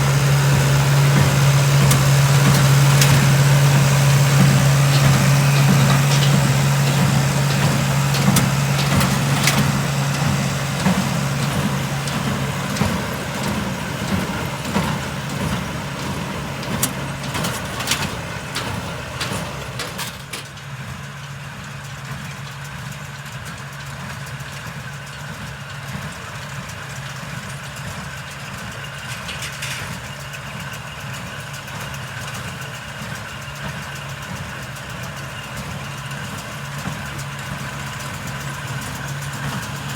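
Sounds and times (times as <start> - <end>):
knocks and rattles: 0.0 - 20.5
tractor engine humming: 0.0 - 39.9.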